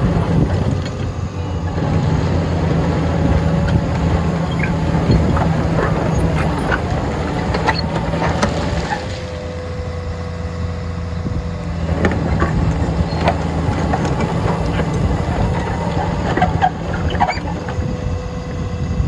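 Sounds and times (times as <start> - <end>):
bulldozer diesel engine running: 0.0 - 19.0
steady whine: 0.0 - 19.0
machine clanks and knocks: 11.8 - 17.9.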